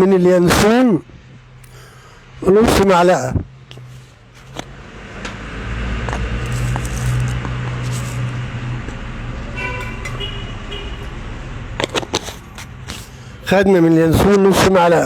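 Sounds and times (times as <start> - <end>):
road traffic engine noise: 0.0 - 15.0
car horn toots: 9.5 - 11.2.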